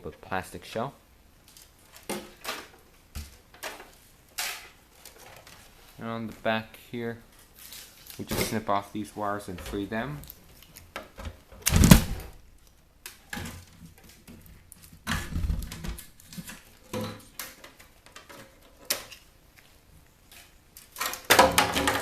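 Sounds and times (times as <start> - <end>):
plastic casing clunking and rattling: 11.0 - 12.4
cutters snipping wires: 11.6 - 12.2.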